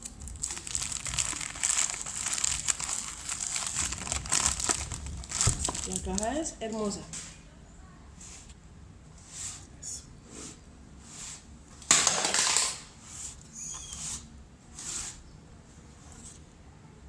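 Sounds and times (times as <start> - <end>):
packaging rustling and scraping: 0.0 - 6.4.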